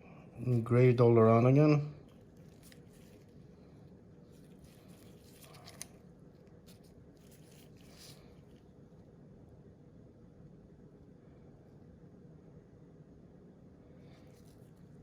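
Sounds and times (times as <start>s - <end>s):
soft scrapes and rustles: 2.0s - 9.0s, 13.9s - 15.0s.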